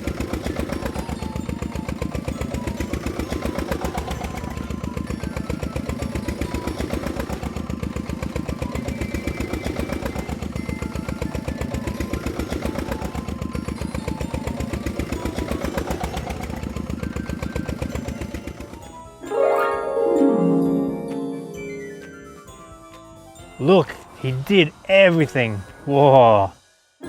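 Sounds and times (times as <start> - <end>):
heavy machine engine chugging: 0.0 - 19.2.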